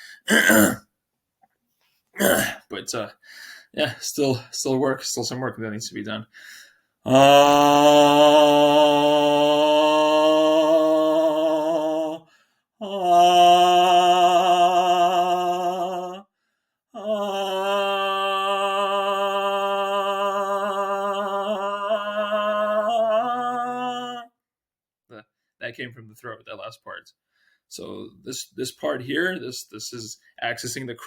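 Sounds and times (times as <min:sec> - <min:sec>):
man breathing: 0:00.0 - 0:00.3, 0:03.2 - 0:03.8, 0:06.3 - 0:07.0, 0:12.2 - 0:12.8, 0:16.3 - 0:16.9, 0:27.2 - 0:27.7
man singing held vowel tones: 0:07.1 - 0:16.2, 0:17.0 - 0:24.4.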